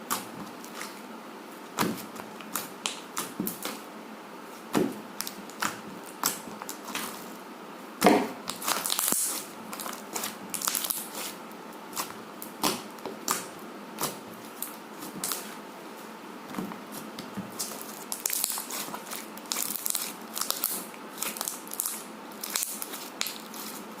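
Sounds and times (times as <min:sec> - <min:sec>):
slime crackling and popping: 0:08.0 - 0:11.3, 0:17.5 - 0:23.8.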